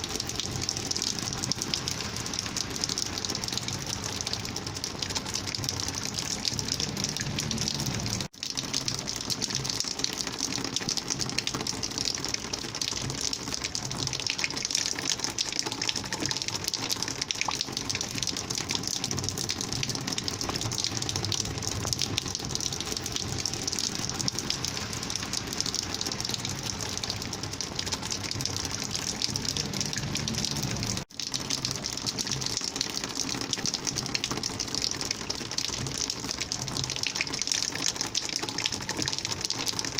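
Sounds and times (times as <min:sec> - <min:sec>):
rainwater rushing: 0:00.0 - 0:39.9.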